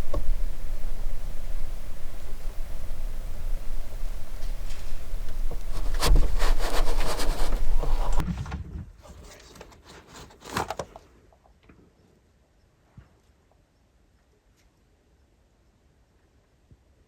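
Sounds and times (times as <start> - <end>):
wind rumble on microphone: 0.0 - 9.1
scraping and rustling handling: 0.0 - 11.1.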